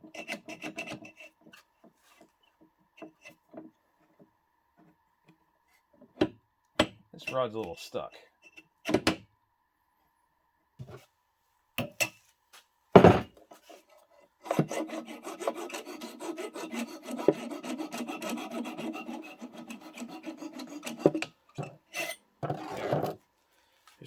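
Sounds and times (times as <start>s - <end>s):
file rasping on metal rod: 0.1s - 1.6s, 14.4s - 23.1s.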